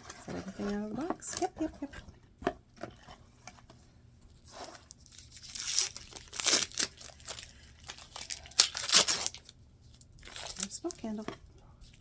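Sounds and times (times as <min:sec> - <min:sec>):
packaging crinkling and rustling: 0:04.3 - 0:12.0.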